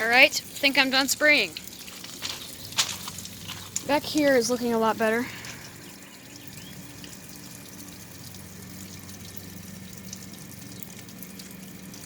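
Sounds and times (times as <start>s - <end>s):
water trickling and dripping: 0.0s - 12.0s.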